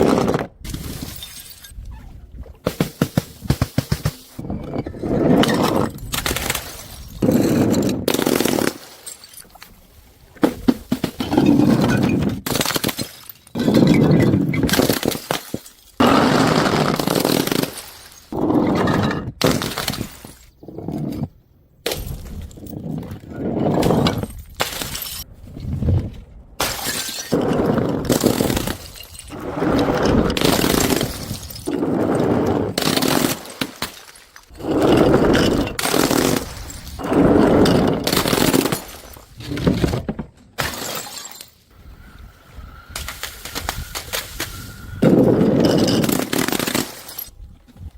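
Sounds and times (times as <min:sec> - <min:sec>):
glass bottles smashing on stairs: 0:00.7 - 0:01.8, 0:05.4 - 0:09.6, 0:11.0 - 0:16.0, 0:23.8 - 0:25.3, 0:26.6 - 0:29.4, 0:30.0 - 0:31.8, 0:32.8 - 0:41.7, 0:45.1 - 0:47.3.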